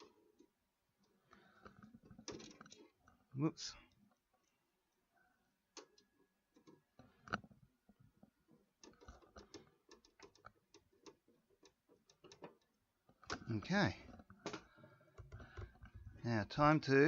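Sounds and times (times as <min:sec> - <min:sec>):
clicks and taps of computer parts: 0:08.5 - 0:16.2.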